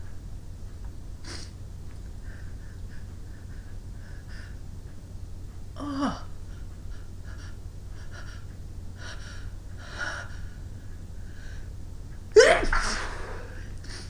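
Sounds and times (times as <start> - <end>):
woman sneezing: 12.4 - 13.7
woman sniffing and gasping: 12.4 - 14.0.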